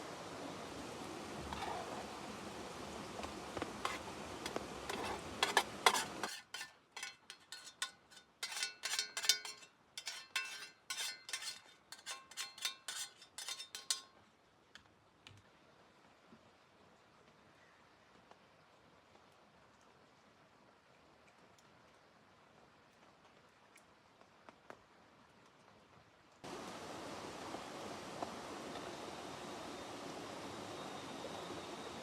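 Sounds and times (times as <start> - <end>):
steady hiss: 0.0 - 6.3, 26.4 - 32.0
metal utensils clinking on pot: 3.8 - 14.1.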